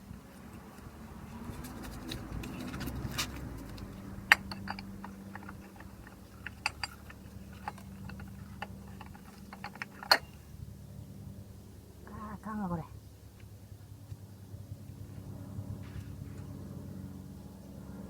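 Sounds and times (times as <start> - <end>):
low steady hum: 0.0 - 18.0
clicks and knocks of metal parts: 0.6 - 10.5.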